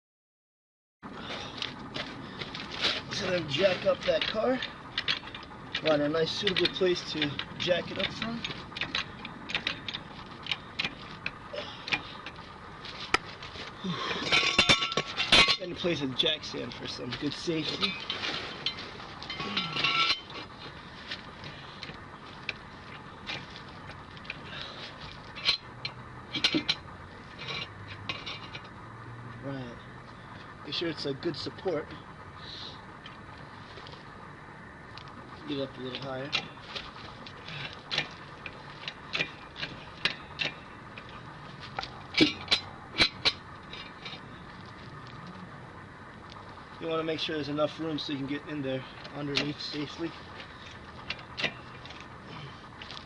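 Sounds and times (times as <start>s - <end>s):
metal jack stand clinking: 3.1s - 12.4s, 14.0s - 20.6s, 21.4s - 28.8s, 36.0s - 45.2s, 47.1s - 53.0s.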